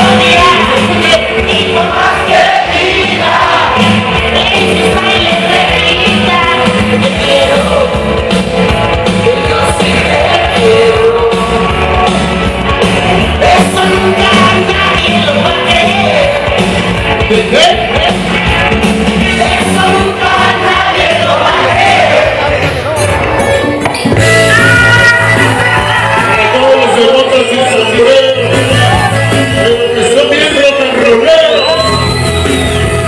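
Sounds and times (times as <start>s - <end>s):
person singing: 0.0s - 8.2s, 9.2s - 12.1s, 13.2s - 16.7s, 19.4s - 21.8s
loud dance music: 0.0s - 33.0s.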